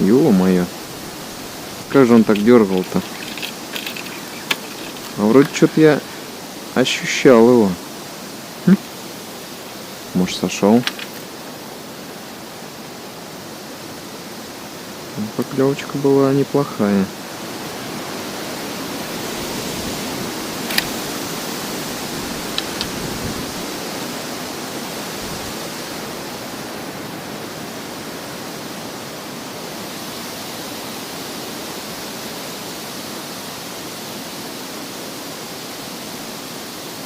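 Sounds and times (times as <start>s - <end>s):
faint ticks: 2.0s - 5.8s
sharp click: 10.8s - 11.3s, 20.7s - 21.0s.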